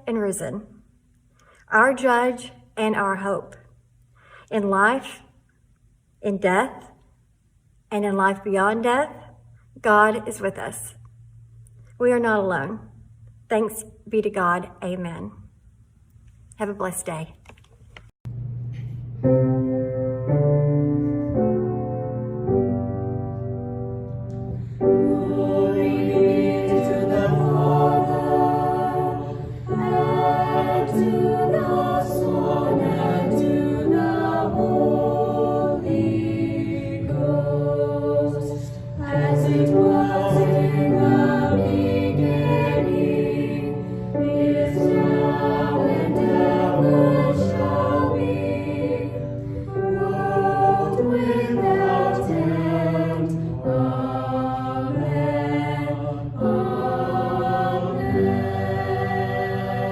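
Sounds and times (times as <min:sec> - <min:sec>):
low steady accompaniment: 0:18.3 - 0:59.9
choir singing: 0:24.6 - 0:59.9.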